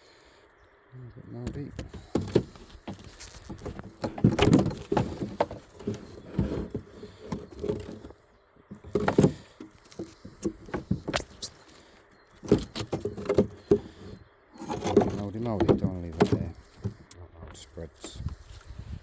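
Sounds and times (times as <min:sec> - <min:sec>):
wooden hive frames knocking: 0:01.4 - 0:11.7, 0:12.4 - 0:18.4.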